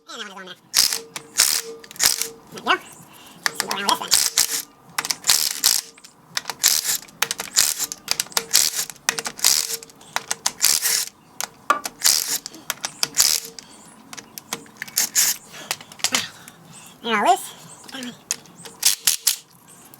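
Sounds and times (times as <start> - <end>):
impact wrench hammering: 0.8 - 2.5, 3.5 - 11.1.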